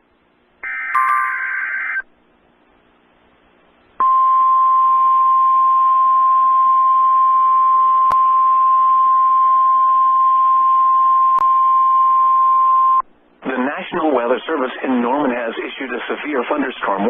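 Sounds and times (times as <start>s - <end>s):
steady alarm beep: 0.7s - 2.0s
faint radio hiss: 1.5s - 4.0s, 13.0s - 17.0s.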